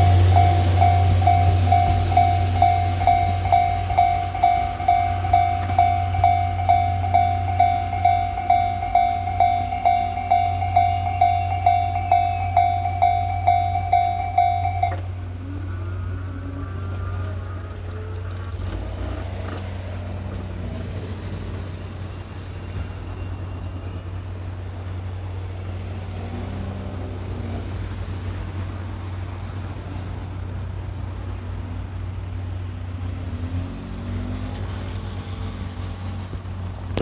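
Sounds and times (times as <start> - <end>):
level crossing bell ringing: 0.0 - 15.2
road vehicle hum: 0.0 - 37.0.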